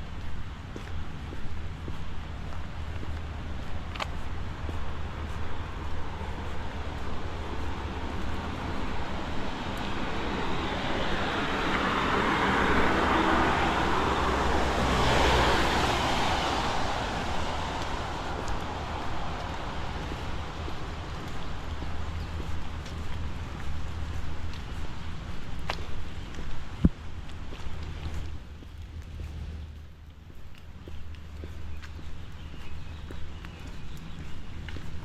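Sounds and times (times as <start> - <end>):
vehicle engine rumble: 0.0 - 35.0
rain: 1.7 - 29.6.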